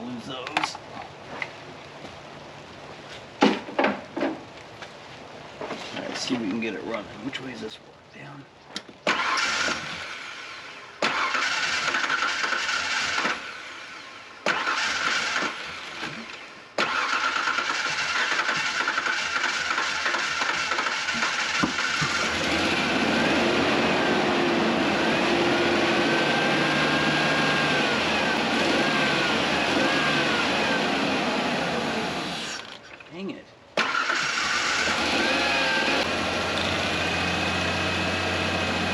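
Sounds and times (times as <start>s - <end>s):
engine cranking: 9.0s - 10.2s, 11.0s - 13.6s, 14.4s - 23.0s, 33.8s - 37.7s
engine running: 9.1s - 32.8s, 33.8s - 38.9s.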